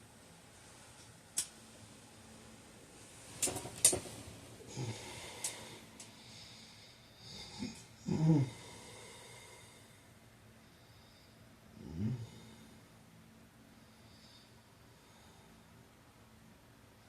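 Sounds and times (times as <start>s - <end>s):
man snoring: 4.7s - 9.8s, 11.8s - 12.7s.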